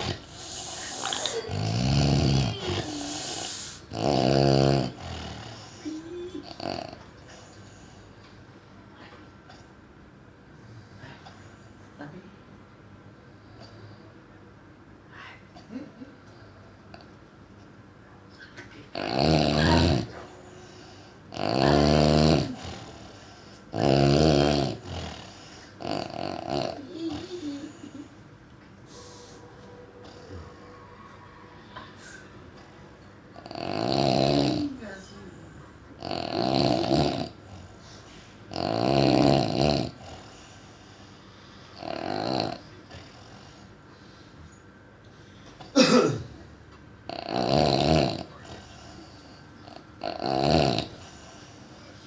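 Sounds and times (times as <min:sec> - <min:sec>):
heavy snoring: 0:00.0 - 0:07.4, 0:18.9 - 0:28.0, 0:30.0 - 0:35.0, 0:36.0 - 0:40.7, 0:41.7 - 0:43.7, 0:47.1 - 0:51.7.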